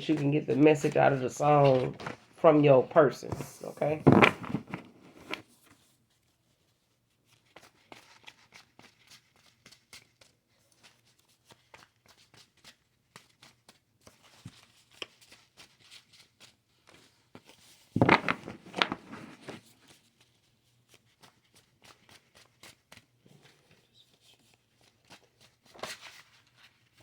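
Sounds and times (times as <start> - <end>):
person speaking: 0.0 - 5.4
soft rustling: 0.0 - 6.6, 18.0 - 27.0.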